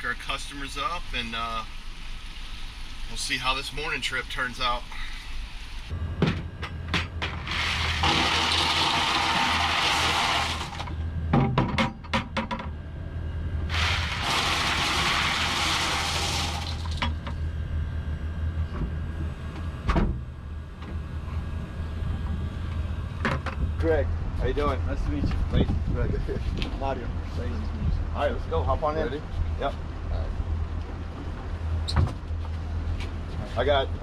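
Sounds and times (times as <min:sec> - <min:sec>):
boat engine rumbling: 0:12.7 - 0:26.3.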